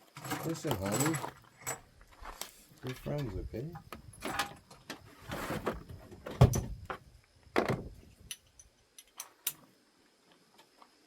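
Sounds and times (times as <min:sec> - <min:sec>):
metal parts clanking: 0:00.1 - 0:01.8, 0:02.9 - 0:04.7.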